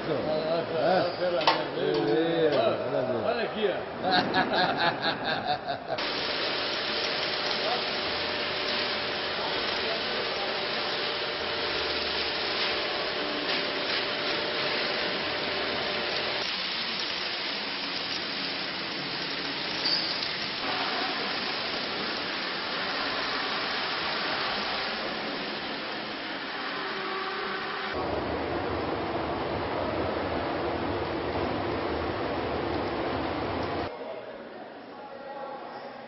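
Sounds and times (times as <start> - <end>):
washing machine rushing and rubbing: 4.0 - 28.0.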